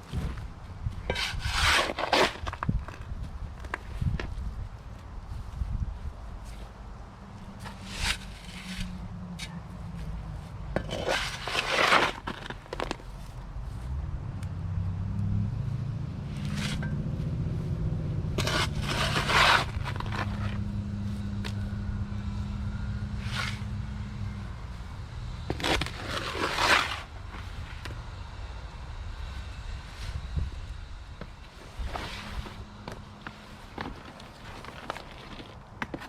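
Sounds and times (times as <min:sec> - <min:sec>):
wet concrete scraping: 0:01.1 - 0:03.0, 0:07.6 - 0:08.9, 0:10.8 - 0:13.0, 0:18.4 - 0:20.6, 0:25.5 - 0:27.1, 0:33.3 - 0:36.0
low motor hum: 0:02.6 - 0:35.6.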